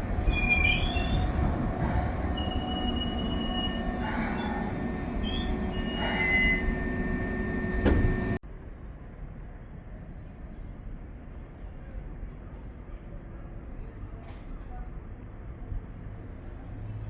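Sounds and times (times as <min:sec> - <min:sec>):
electric train rumbling past: 0:00.0 - 0:08.4
high wheel squeal: 0:00.0 - 0:08.4.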